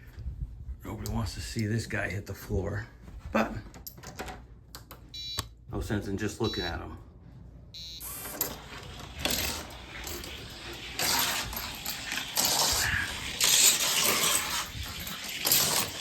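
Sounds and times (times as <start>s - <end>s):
toy car rattling down plastic track: 8.0s - 16.0s.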